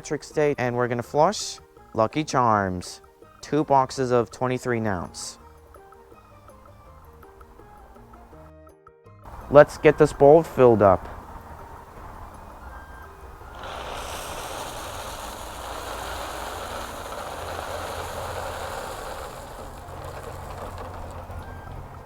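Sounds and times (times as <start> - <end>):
cereal pouring into toilet bowl: 13.5 - 21.7.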